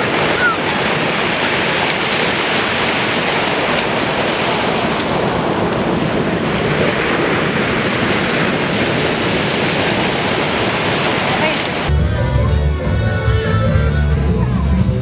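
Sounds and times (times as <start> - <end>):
sea waves washing on shore: 0.0 - 11.9
wind blowing on microphone: 0.0 - 11.9.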